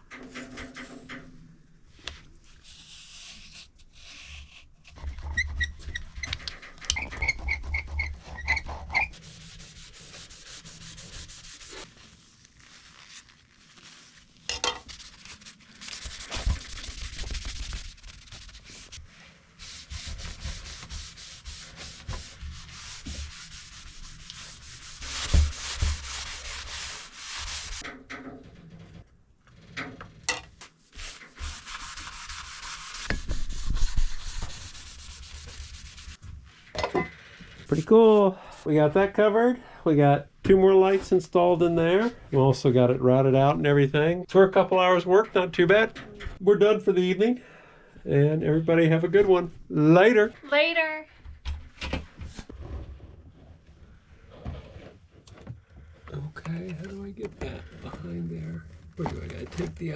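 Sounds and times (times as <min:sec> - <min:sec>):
rubbing and scraping: 0:00.0 - 0:01.4, 0:02.4 - 0:38.2, 0:56.1 - 0:59.9.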